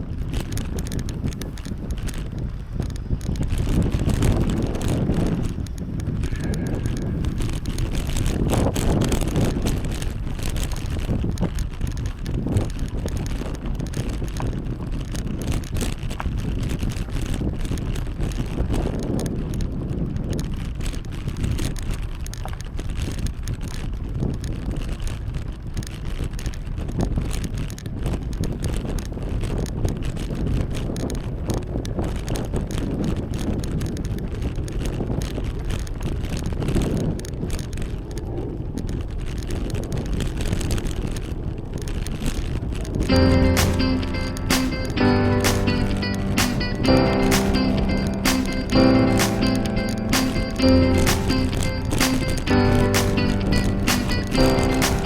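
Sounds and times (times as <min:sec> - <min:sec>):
wind rushing over microphone: 0:00.0 - 0:21.4
light clicks from bicycle: 0:00.0 - 0:43.1
tyre and road noise: 0:32.6 - 0:55.0.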